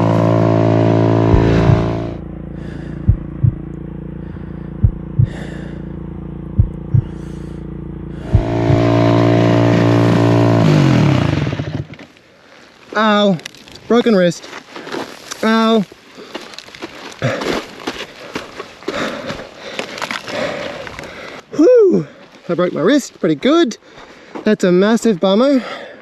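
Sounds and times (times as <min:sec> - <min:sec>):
dirt bike engine revving: 0:00.0 - 0:12.1
sharp knocks over rough ground: 0:01.3 - 0:02.2, 0:03.1 - 0:03.7, 0:08.2 - 0:09.2.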